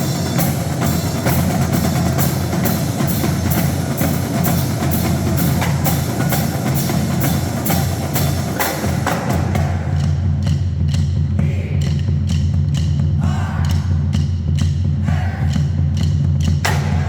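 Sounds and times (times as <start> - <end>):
bass drum pulse: 14.5 - 17.0
snare drum strokes: 16.6 - 17.0.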